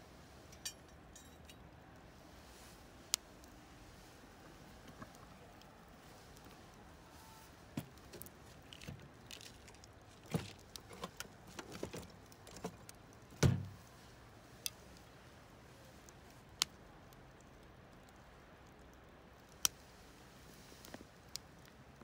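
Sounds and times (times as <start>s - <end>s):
clicks and knocks of handling: 7.7s - 13.7s.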